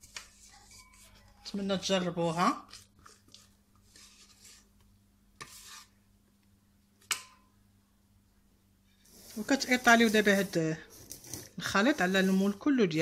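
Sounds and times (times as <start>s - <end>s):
batter scraping: 0.0s - 1.4s, 2.2s - 4.8s, 5.4s - 6.0s, 9.0s - 13.0s.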